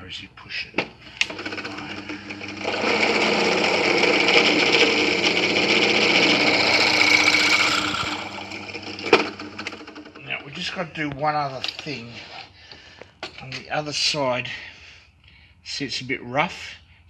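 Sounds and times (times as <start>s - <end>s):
drill press cutting metal: 1.2s - 10.2s.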